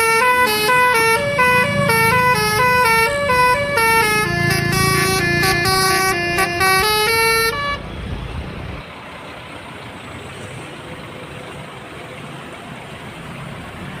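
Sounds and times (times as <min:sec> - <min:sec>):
multi-tone bus horn tune: 0:00.0 - 0:08.0
low engine rumble: 0:00.0 - 0:14.0
traffic noise: 0:00.0 - 0:14.0.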